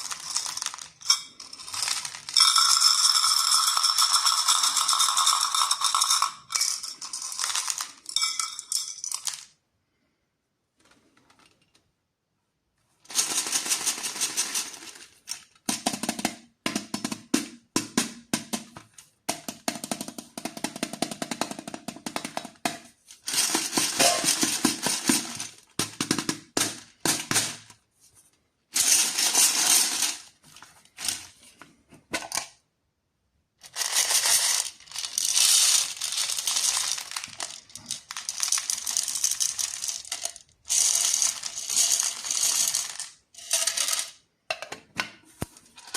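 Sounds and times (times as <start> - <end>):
candy wrappers crinkling: 0.0 - 8.2, 23.2 - 25.7, 33.7 - 44.0.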